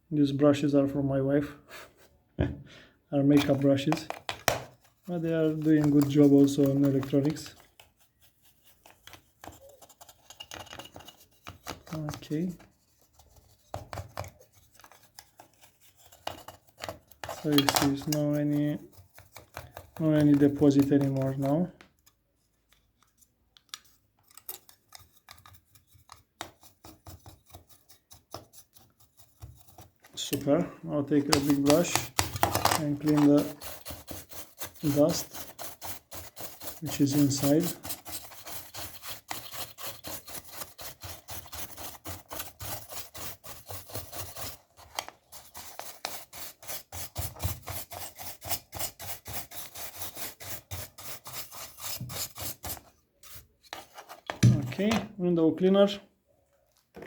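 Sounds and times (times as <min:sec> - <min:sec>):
plastic cover clicks and scrapes: 0:03.3 - 0:12.5, 0:31.2 - 0:35.6
brush scrubbing plastic: 0:04.7 - 0:21.8, 0:24.8 - 0:54.0.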